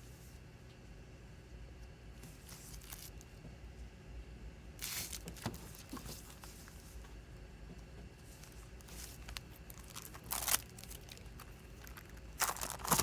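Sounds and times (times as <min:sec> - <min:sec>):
plastic packaging crinkling: 0:02.3 - 0:03.3, 0:04.8 - 0:07.0, 0:08.2 - 0:13.0
plastic packaging ripping: 0:02.4 - 0:03.2, 0:04.8 - 0:06.4, 0:08.4 - 0:13.0.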